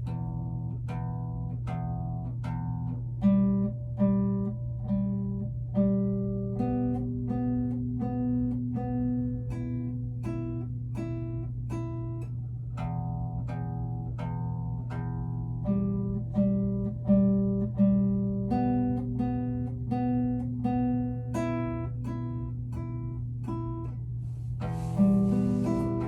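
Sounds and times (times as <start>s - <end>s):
guitar plucked single notes: 0.0s - 26.0s
steady low hum: 0.0s - 26.0s.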